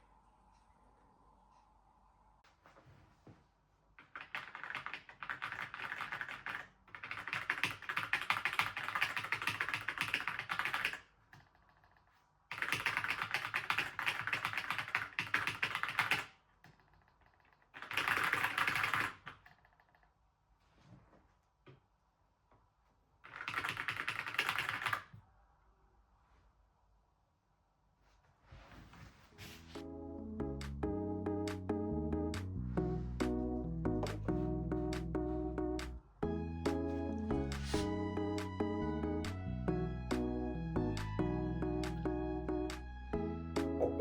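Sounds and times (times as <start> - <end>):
mechanical keyboard typing: 4.0 - 20.1, 23.2 - 25.1.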